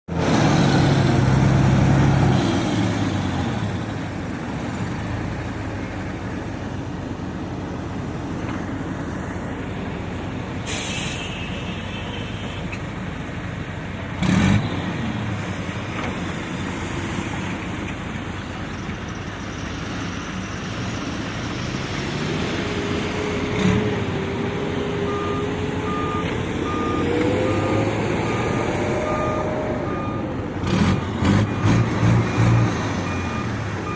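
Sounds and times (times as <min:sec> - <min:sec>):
diesel machinery running: 0:00.1 - 0:33.9
air hiss: 0:10.6 - 0:11.6
reversing alarm beeping: 0:25.0 - 0:30.4, 0:31.4 - 0:33.9.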